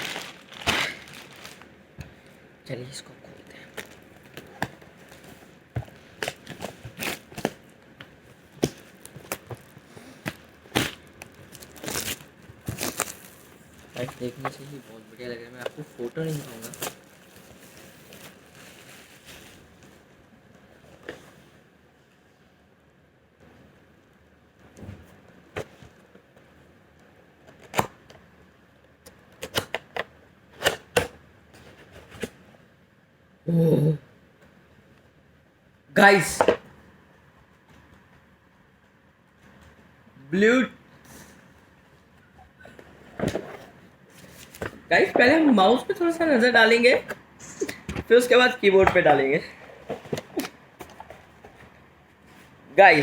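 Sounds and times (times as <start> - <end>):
packaging rustling: 0.0 - 1.8, 3.6 - 20.0, 44.1 - 44.9.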